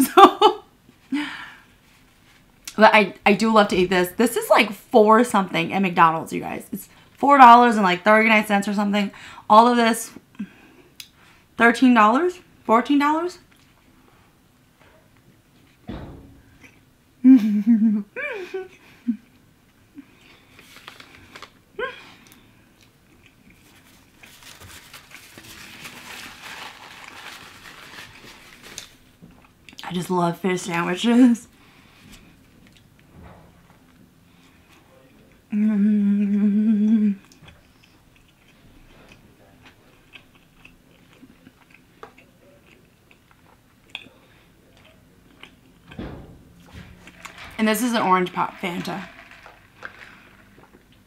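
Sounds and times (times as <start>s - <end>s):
person humming mm: 35.5s - 37.3s
person chewing food: 37.2s - 45.9s
handling noise: 45.8s - 50.9s.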